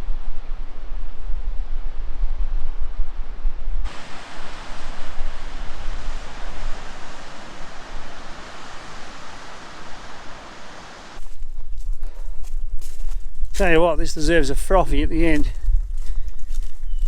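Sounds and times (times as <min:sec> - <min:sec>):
waterfall rushing: 0:03.9 - 0:11.2.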